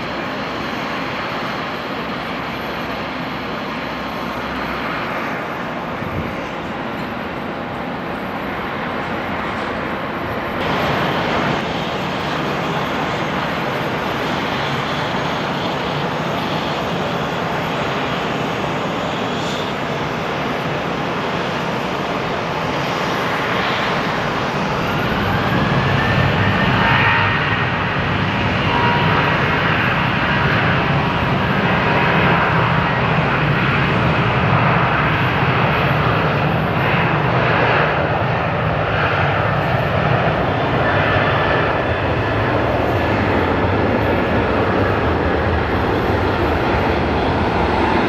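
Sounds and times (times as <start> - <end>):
jet engines roaring: 0.0 - 48.0
rising engine whine: 22.8 - 48.0.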